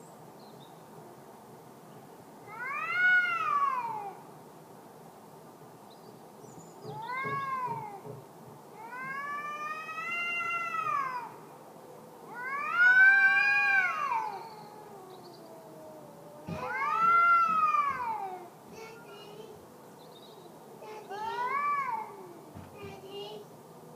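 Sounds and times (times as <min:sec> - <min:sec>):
cats yowling: 0:02.5 - 0:04.2, 0:06.9 - 0:08.2, 0:08.8 - 0:19.0, 0:20.9 - 0:22.6.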